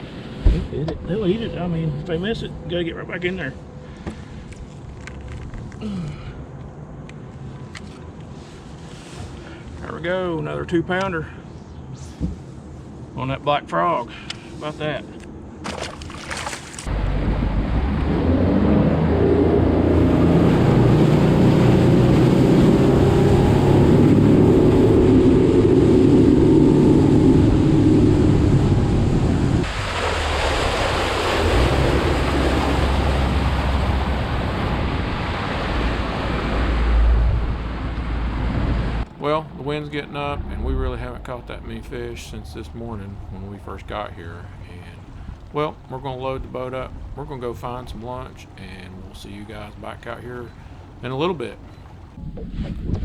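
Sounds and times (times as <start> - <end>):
wind and water rushing: 14.6 - 53.0
motorboat engine drone: 15.4 - 53.0.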